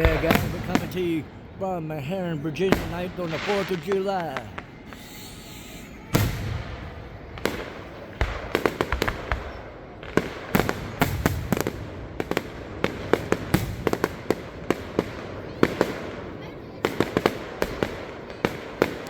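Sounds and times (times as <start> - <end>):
deep firework boom: 0.0 - 1.3, 2.6 - 14.4
sharp crackling pops: 0.0 - 16.1.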